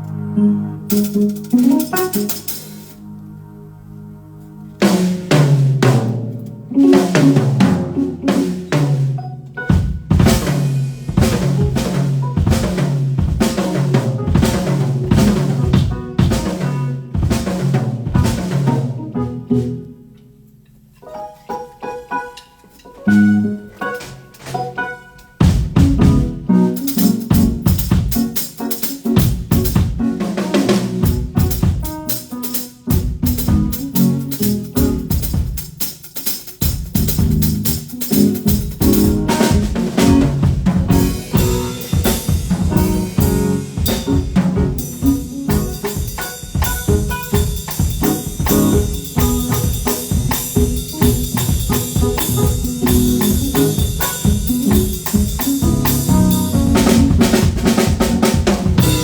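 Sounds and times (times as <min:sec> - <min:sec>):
pitched instrument notes: 0:00.0 - 0:59.0
drum kit playing a beat: 0:00.9 - 0:03.0, 0:04.8 - 0:20.0, 0:21.8 - 0:59.0.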